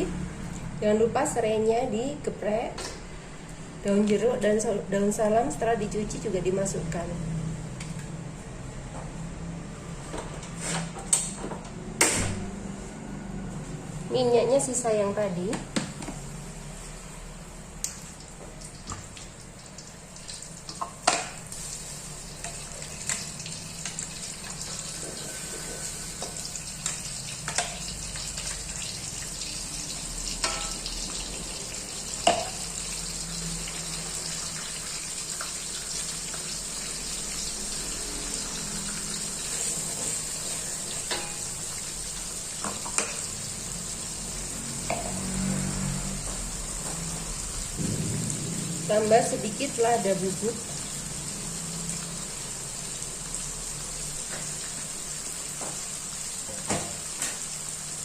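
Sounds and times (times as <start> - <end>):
spice paste sizzling in oil: 19.4 - 47.8.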